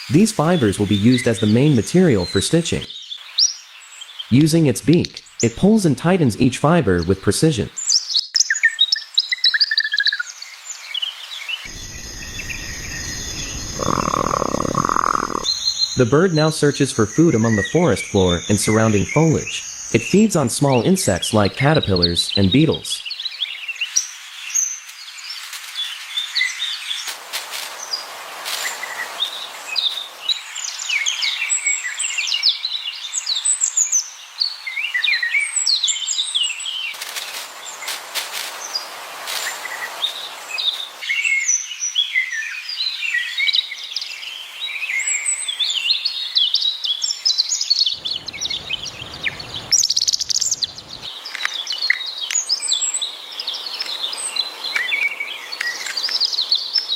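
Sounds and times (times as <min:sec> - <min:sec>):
small birds chirping: 0:07.8 - 0:27.1, 0:28.7 - 0:56.9
low rumble: 0:11.7 - 0:16.0.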